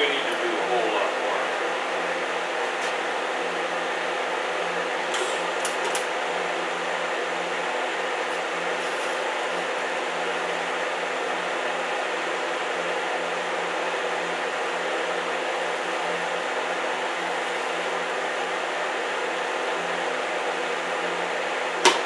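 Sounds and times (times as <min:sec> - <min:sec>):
electric welder humming and hissing: 0:01.6 - 0:06.2, 0:07.9 - 0:11.5, 0:14.3 - 0:20.2.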